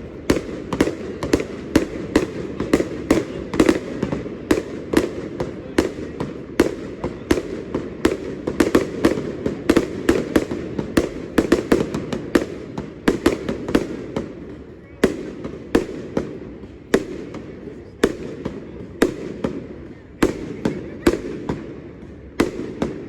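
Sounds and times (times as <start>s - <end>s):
fireworks bangs and pops: 0.0s - 23.0s.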